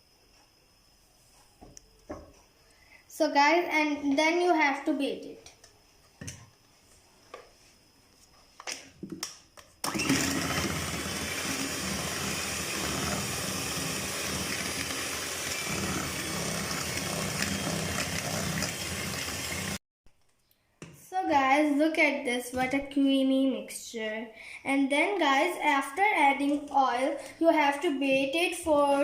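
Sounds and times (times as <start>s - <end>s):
electric hand beater running: 9.8s - 19.8s.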